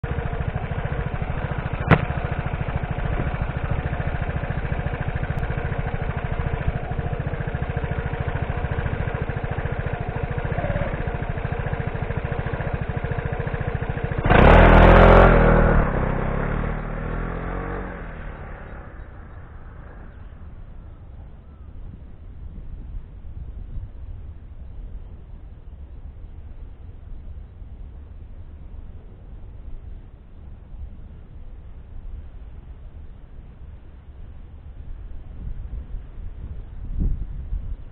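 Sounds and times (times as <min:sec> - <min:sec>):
scooter accelerating away: 0:00.0 - 0:21.6
scooter engine idling: 0:00.0 - 0:22.4.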